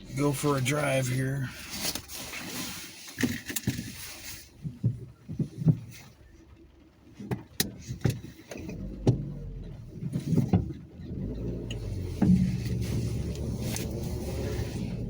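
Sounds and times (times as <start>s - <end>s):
car engine running: 0.0s - 15.0s
tyres hissing on wet road: 11.2s - 15.0s.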